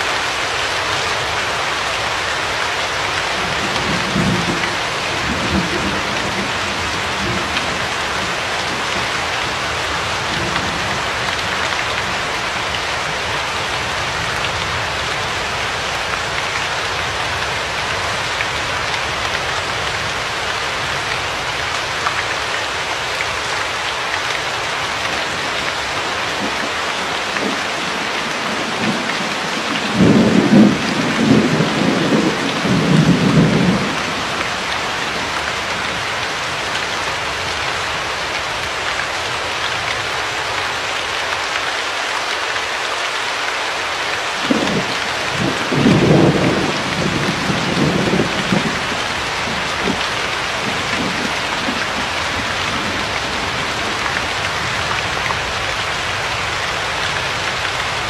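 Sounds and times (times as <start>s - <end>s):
steady rain: 0.0s - 58.0s
low rolls of thunder: 28.4s - 34.3s, 44.4s - 54.7s.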